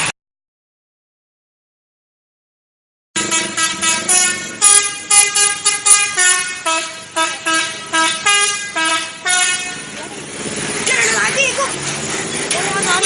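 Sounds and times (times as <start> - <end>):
musical bus air horn: 3.2 - 10.0.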